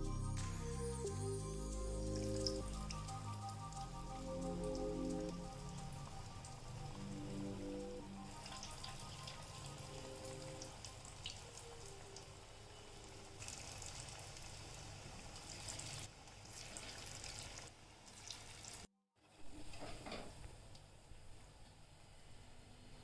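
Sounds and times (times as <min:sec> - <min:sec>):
food frying in hot oil: 0:02.4 - 0:18.9.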